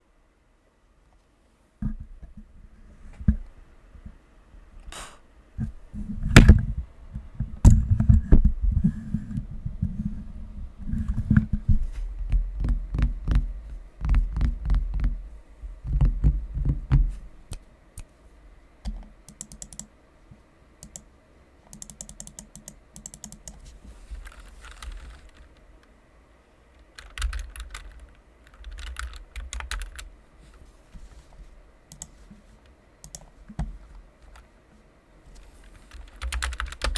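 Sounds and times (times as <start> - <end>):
mechanical keyboard typing: 18.9 - 19.9, 20.8 - 21.0, 21.7 - 23.6, 24.2 - 25.6, 26.8 - 30.2, 31.9 - 32.2, 33.0 - 33.3, 35.6 - 36.9.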